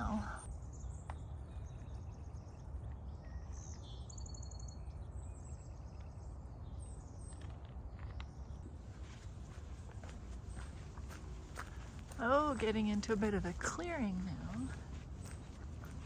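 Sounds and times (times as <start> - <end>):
bird trill: 0.0 - 6.2
small birds chirping: 0.0 - 16.0
low outdoor rumble: 8.6 - 16.0.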